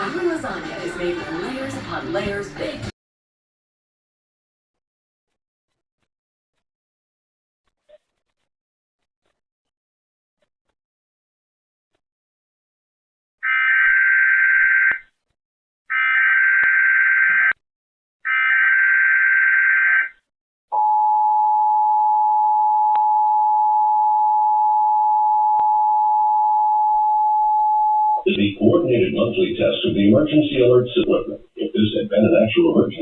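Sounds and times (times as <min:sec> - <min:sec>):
two-tone attention signal: 0:20.8 - 0:28.4.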